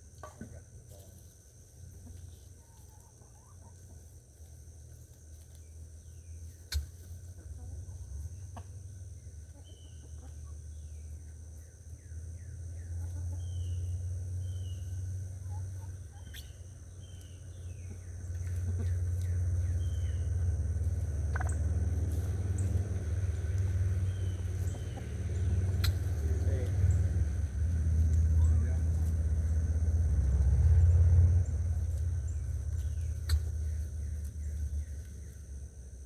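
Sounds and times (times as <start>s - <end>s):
chickens clucking: 0.0s - 36.0s
low steady rumble: 0.0s - 36.0s.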